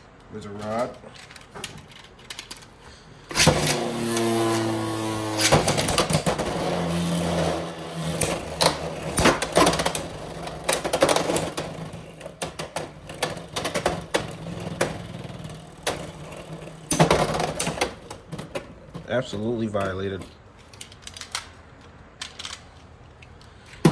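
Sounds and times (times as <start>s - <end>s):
steady whir of spinning tops: 3.3s - 19.0s.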